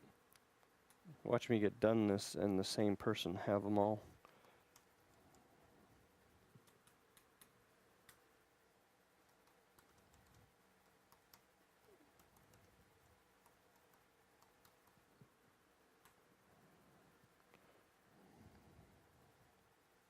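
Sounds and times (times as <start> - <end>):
keyboard typing clicks: 9.2 - 12.8.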